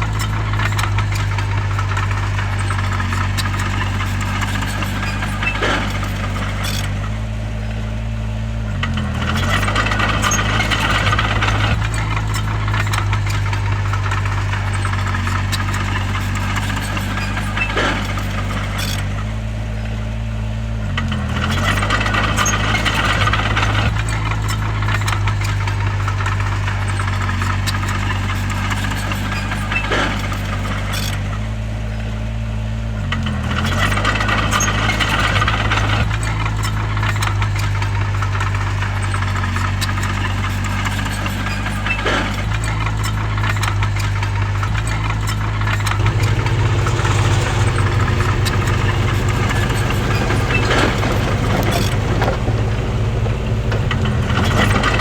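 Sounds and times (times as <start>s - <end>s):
bulldozer diesel engine under load: 0.0s - 55.0s
metal clanks and rattles: 45.2s - 55.0s.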